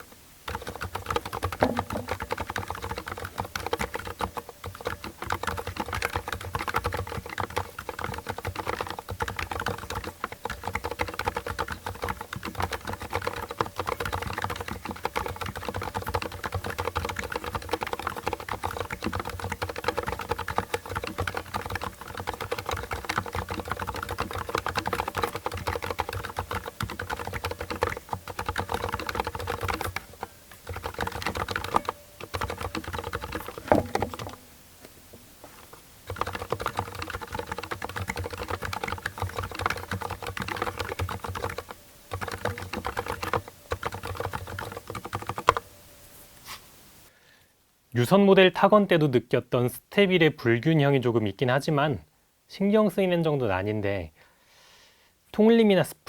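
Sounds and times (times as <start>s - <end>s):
mechanical keyboard typing: 0.0s - 34.4s, 35.6s - 45.7s.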